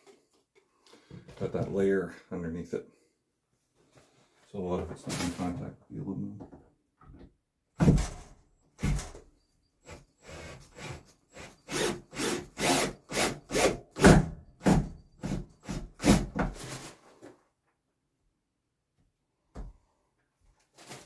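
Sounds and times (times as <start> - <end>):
hand saw cutting wood: 10.2 - 17.0.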